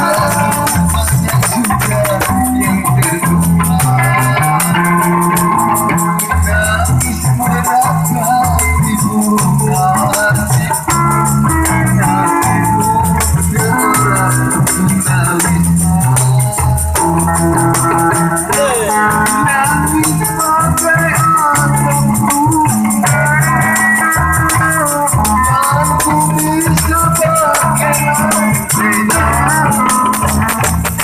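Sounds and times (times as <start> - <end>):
keyboard melody: 0.0 - 31.0
repeating bass line: 0.0 - 31.0
shaker percussion rattling: 0.0 - 31.0.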